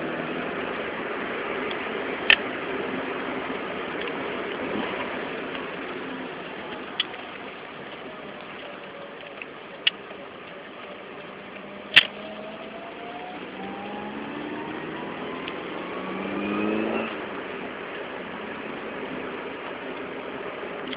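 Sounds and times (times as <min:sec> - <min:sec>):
vehicle driving: 0:00.0 - 0:20.9
rising whine: 0:03.4 - 0:19.8
sharp clicks: 0:11.2 - 0:13.5.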